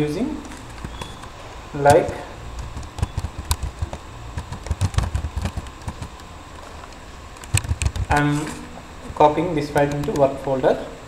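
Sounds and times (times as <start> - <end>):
computer keyboard and mouse clicks: 1.9 - 6.3, 7.4 - 8.2, 9.7 - 10.3.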